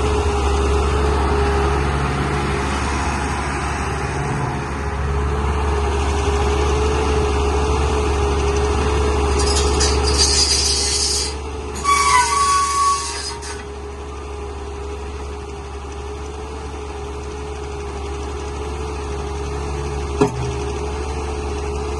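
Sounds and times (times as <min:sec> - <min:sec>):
excavator diesel engine running: 0:00.0 - 0:21.9
short high squeal: 0:09.3 - 0:13.8.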